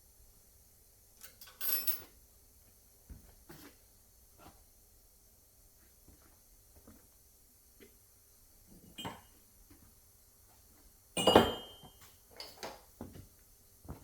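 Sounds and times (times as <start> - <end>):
metal tools clattering: 1.2 - 2.1.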